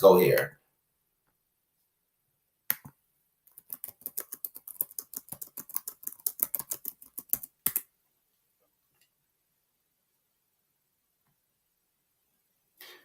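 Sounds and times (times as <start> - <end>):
computer keyboard typing: 3.5 - 7.8.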